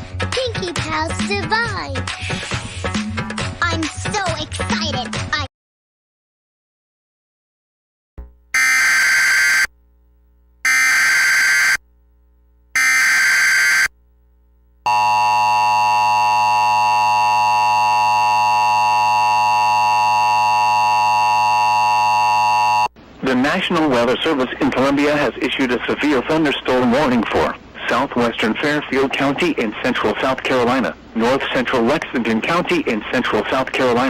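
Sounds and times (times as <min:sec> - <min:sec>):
long steady attention tone: 0:08.3 - 0:23.0.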